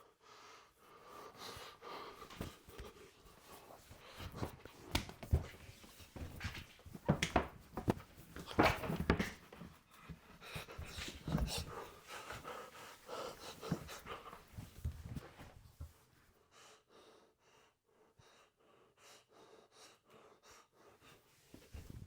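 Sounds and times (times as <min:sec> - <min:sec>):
person panting heavily: 0:00.1 - 0:04.4, 0:10.1 - 0:14.8.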